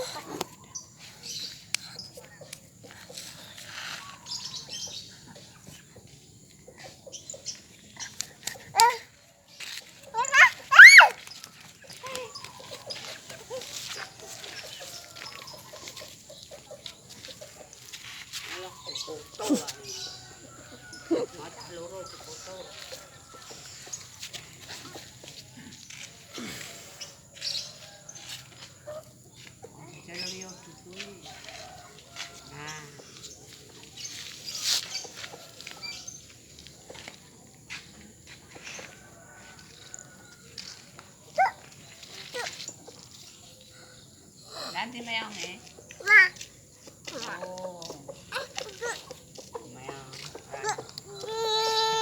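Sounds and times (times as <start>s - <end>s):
wavering animal cry: 10.2s - 11.2s.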